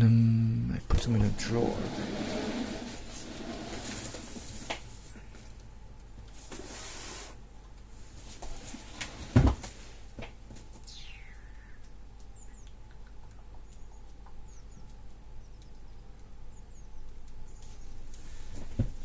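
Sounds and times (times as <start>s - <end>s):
drawer moving: 1.6s - 4.8s.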